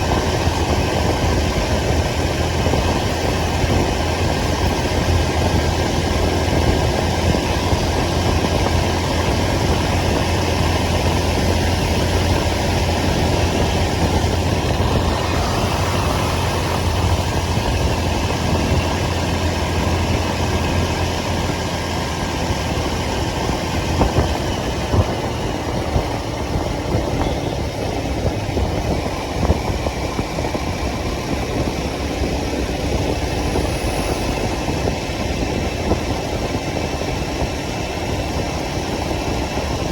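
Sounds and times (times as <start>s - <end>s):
motorcycle engine running: 0.0s - 39.9s
road and wind noise: 0.0s - 39.9s.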